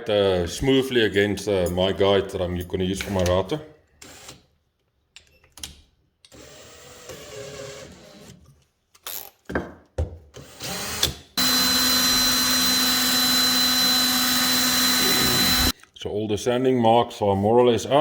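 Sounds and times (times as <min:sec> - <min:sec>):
hand drill whining: 0:10.4 - 0:15.8.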